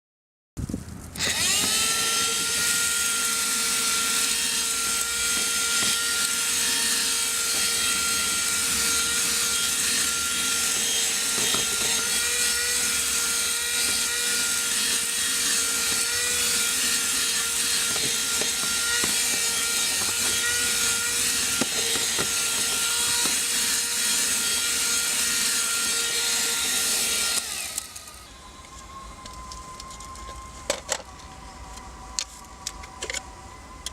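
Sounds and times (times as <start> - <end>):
handheld vacuum cleaner whine: 1.1 - 33.9.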